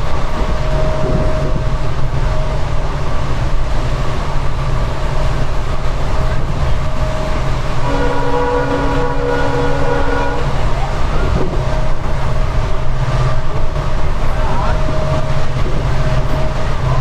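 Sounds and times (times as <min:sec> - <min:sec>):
locomotive engine humming: 0:00.0 - 0:17.0
train horn chord: 0:07.8 - 0:10.7.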